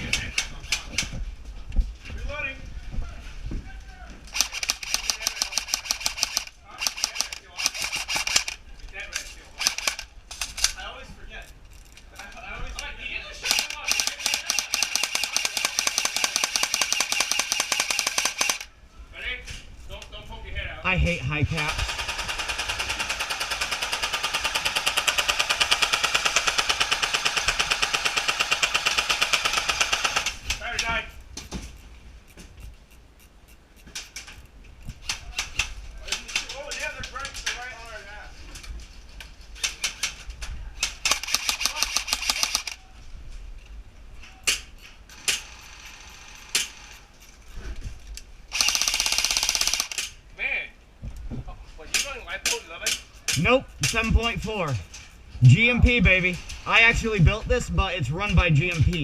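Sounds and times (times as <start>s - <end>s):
airsoft gun full-auto burst: 4.3s - 8.6s, 9.5s - 10.1s, 13.4s - 18.7s, 21.6s - 30.5s, 41.1s - 42.8s, 48.5s - 50.1s.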